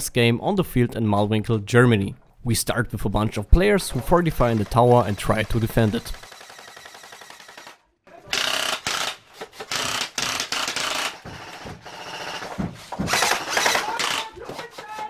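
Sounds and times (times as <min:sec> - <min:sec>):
airsoft guns firing full-auto: 0:04.3 - 0:11.2, 0:13.1 - 0:14.4.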